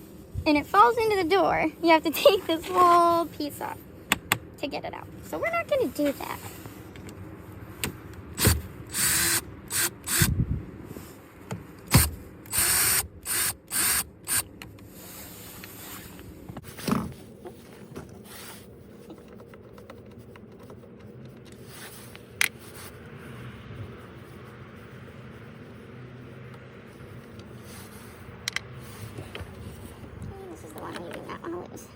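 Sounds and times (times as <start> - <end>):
socket tool running nuts off: 8.4 - 10.3.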